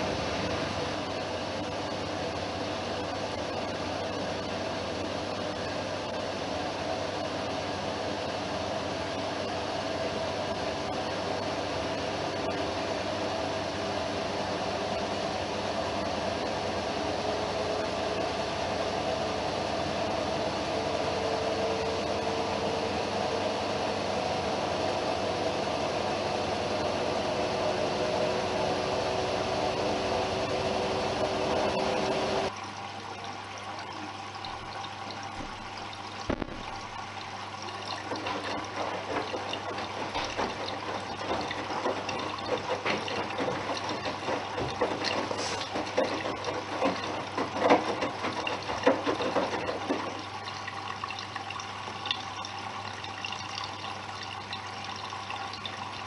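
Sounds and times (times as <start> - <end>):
washing machine hum: 0.0 - 56.0
water splashing and gurgling: 30.4 - 56.0.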